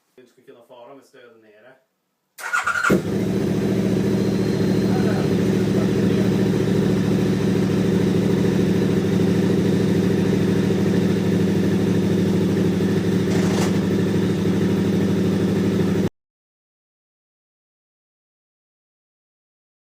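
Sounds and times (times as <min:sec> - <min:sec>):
motorcycle engine running: 0:02.5 - 0:16.1.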